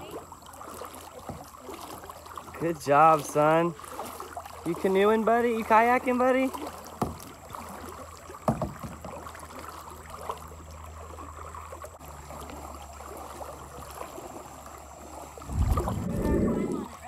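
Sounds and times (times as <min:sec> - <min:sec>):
water rushing past boat: 0:00.0 - 0:17.0
low steady hum: 0:10.1 - 0:17.0
loud deep rumble: 0:15.4 - 0:17.0.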